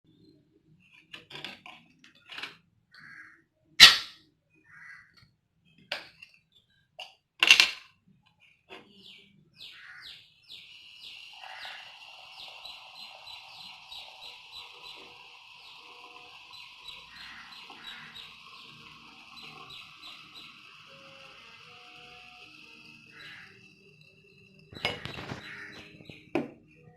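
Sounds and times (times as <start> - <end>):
birds chirping: 8.4 - 26.9.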